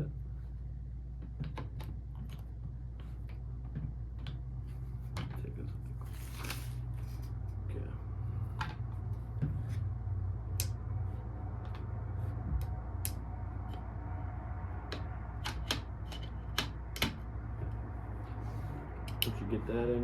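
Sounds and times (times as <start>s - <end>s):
steady low hum: 0.0s - 20.0s
metal parts clicking and tapping: 14.9s - 17.2s.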